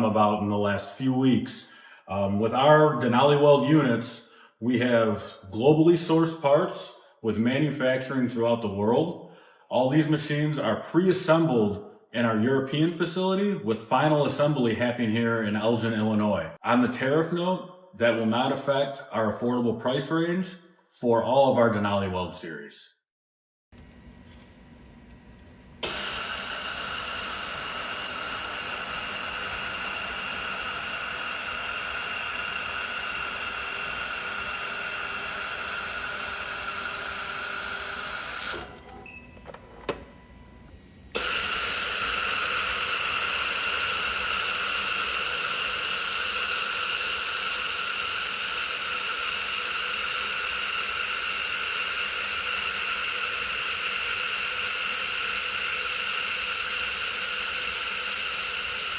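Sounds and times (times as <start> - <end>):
laser welder hissing with high whine: 25.8 - 39.0, 41.1 - 58.9
clicks: 38.1 - 41.4.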